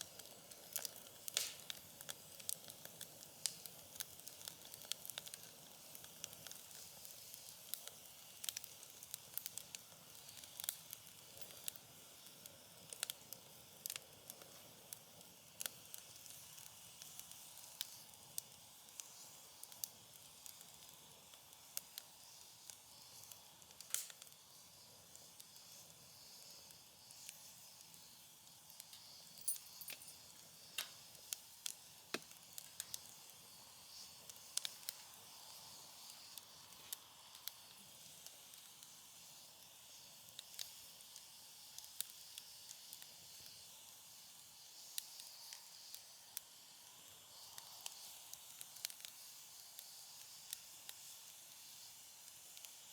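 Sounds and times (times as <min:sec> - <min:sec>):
faint steady hiss: 0:00.0 - 0:52.9
wood fire crackling: 0:00.0 - 0:52.9.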